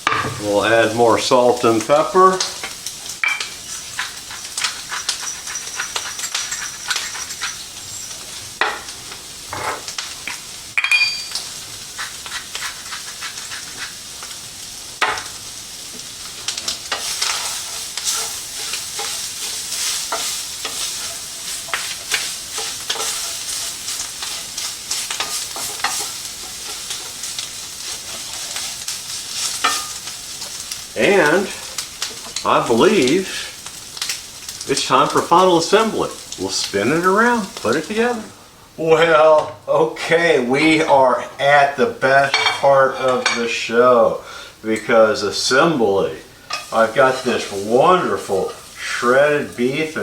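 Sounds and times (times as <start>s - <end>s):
utensil scraping a pan: 0.0s - 9.9s, 11.3s - 14.3s, 15.9s - 33.5s, 46.4s - 49.7s
food sizzling in a frying pan: 0.0s - 50.0s.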